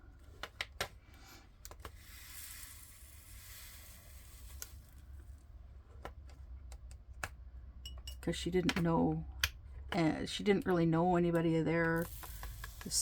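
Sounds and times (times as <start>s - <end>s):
tiny resin beads pouring: 1.8s - 5.1s, 12.0s - 13.0s.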